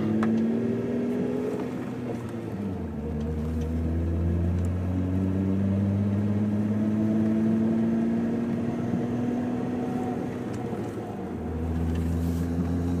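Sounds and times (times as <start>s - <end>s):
car engine and road drone: 0.0s - 13.0s.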